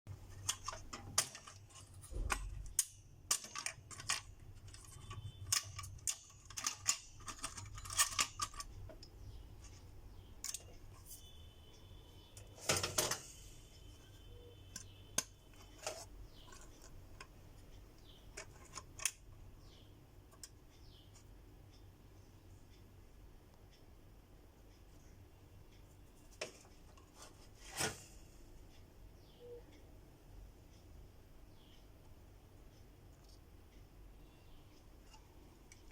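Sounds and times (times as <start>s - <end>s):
clicks and metallic knocks of parts: 0.1s - 9.8s, 10.4s - 11.2s, 12.4s - 13.4s, 14.7s - 21.3s.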